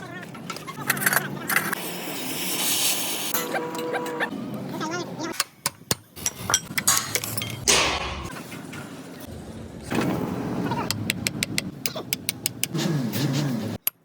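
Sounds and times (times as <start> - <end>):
metal clinks and knocks: 5.7 - 8.3.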